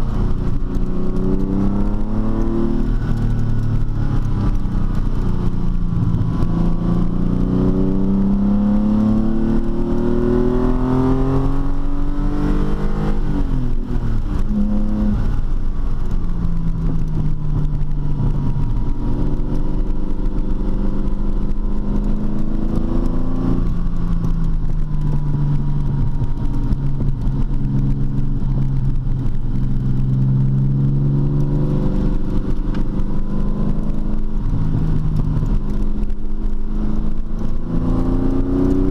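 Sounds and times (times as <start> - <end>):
car engine accelerating: 0.0 - 38.9.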